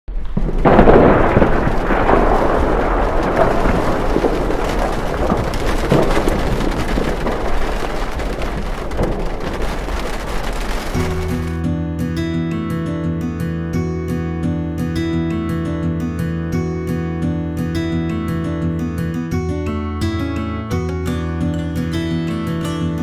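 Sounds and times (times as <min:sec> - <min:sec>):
heavy rain pouring: 0:00.1 - 0:11.6
low thunder-like rumble: 0:00.1 - 0:11.6.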